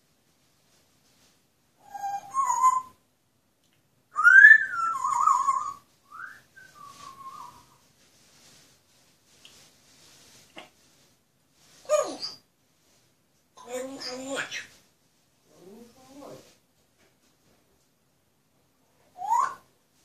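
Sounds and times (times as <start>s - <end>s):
parrot whistling a tune: 1.8s - 3.0s, 4.1s - 7.7s, 19.2s - 19.6s.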